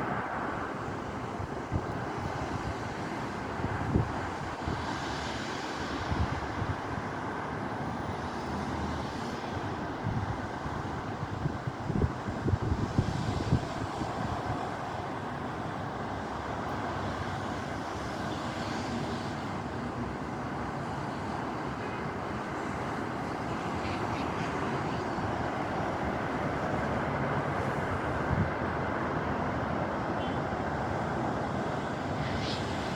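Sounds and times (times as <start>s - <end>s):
wind buffeting microphone: 9.9s - 14.8s
strong wind blowing: 9.9s - 15.1s.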